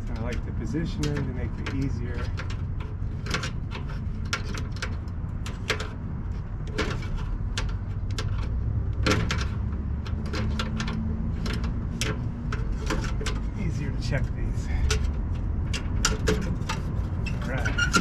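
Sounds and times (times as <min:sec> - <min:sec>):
clicks and taps of wire terminals: 0:00.0 - 0:13.6.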